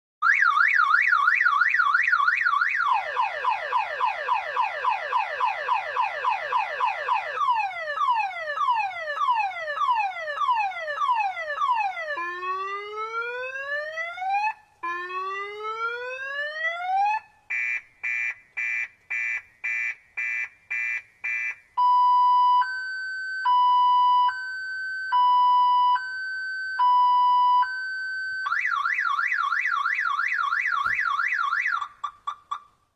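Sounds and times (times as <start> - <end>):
car alarm siren: 0.2 - 32.7.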